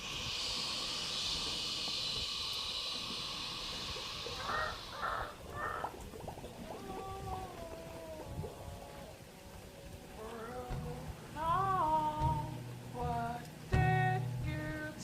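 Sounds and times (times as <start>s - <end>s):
steady hiss: 0.0s - 15.0s
crow cawing: 4.4s - 6.0s.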